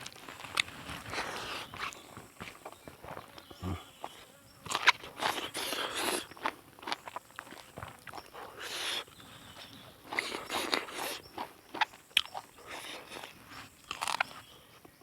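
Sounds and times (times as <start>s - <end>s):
chewing and crunching: 0.0s - 15.0s
mouth clicks: 10.0s - 14.3s.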